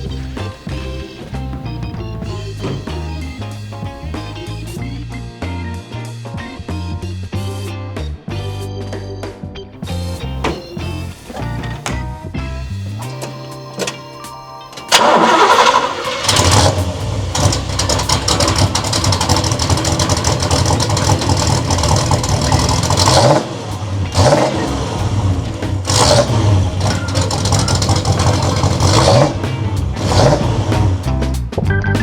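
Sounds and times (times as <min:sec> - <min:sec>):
car engine starting and revving: 0:14.9 - 0:31.2.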